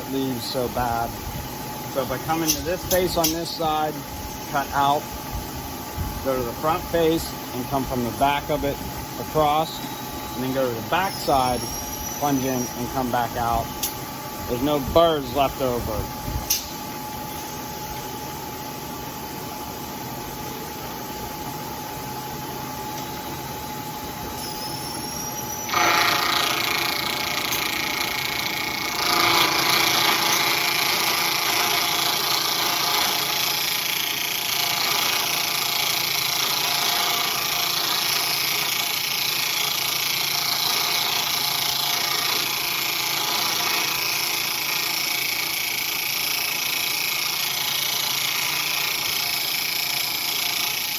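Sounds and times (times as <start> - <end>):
milling cutter cutting metal: 2.0 - 5.0, 6.6 - 14.0, 24.7 - 50.9
milling machine running: 20.0 - 50.9.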